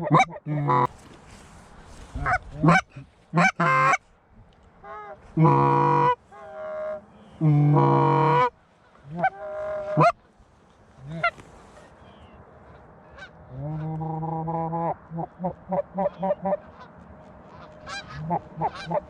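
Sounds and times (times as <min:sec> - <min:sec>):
goose call low moan: 0:00.0 - 0:00.9, 0:04.8 - 0:10.2, 0:13.5 - 0:16.6, 0:18.0 - 0:19.0
goose call honking: 0:00.0 - 0:01.0, 0:02.0 - 0:04.0, 0:04.8 - 0:10.4, 0:11.0 - 0:19.0.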